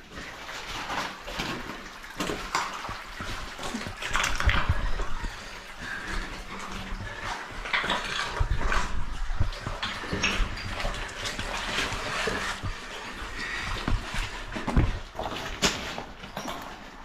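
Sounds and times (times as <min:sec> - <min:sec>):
scuffs and knocks of crawling: 0:00.0 - 0:17.0
water splashing: 0:00.0 - 0:17.0
heavy breathing: 0:05.0 - 0:07.7.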